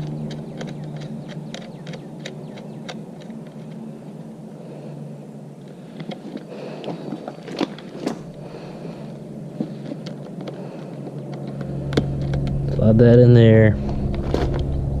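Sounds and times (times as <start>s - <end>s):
metal parts clicking and tapping: 0.0s - 3.8s
steady low hum: 0.0s - 15.0s.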